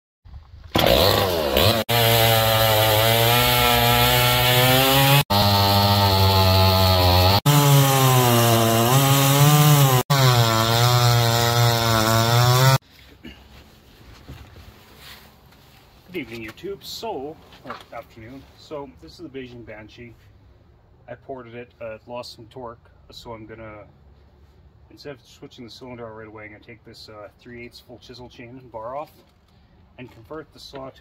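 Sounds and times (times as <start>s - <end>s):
chainsaw running at high revs: 0.8s - 12.8s.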